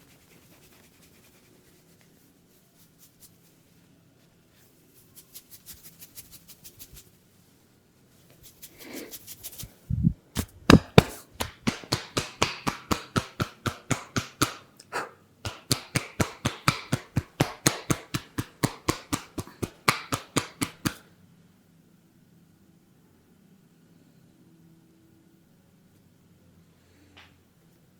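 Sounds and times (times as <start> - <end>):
hands tapping and slapping: 10.4 - 14.8, 15.4 - 21.0.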